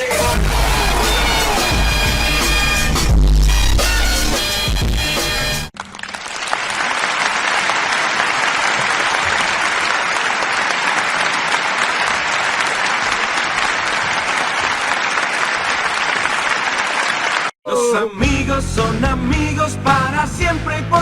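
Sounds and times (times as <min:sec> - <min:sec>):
music: 0:00.0 - 0:05.7, 0:18.0 - 0:21.0
crowd applause: 0:00.2 - 0:02.9, 0:05.8 - 0:17.6.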